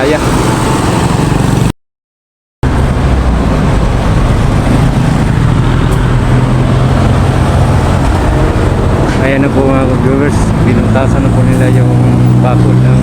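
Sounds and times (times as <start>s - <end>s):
vehicle engine running: 2.6s - 13.0s.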